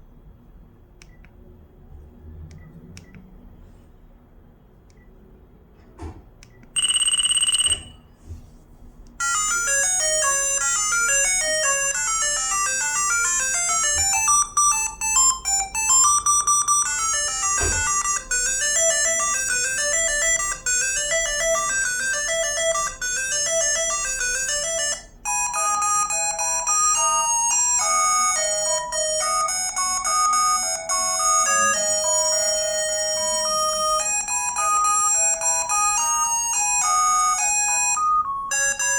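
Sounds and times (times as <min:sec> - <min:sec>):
phone ringtone melody: 0:06.8 - 0:08.2, 0:09.2 - 0:38.9.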